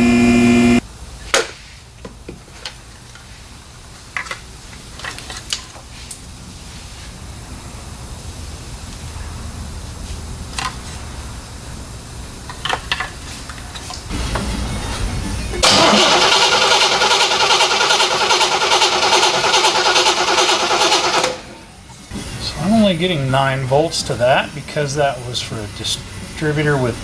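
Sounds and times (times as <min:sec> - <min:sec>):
low steady hum: 0:00.0 - 0:00.8
loud steadily pitched hum: 0:00.0 - 0:01.2, 0:13.6 - 0:27.0.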